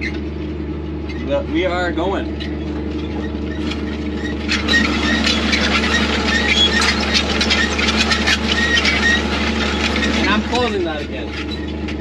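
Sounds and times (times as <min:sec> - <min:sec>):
tractor engine running: 0:00.0 - 0:12.0
steel squealing on stone: 0:02.3 - 0:12.0
harrow discs clattering on stones: 0:02.4 - 0:12.0.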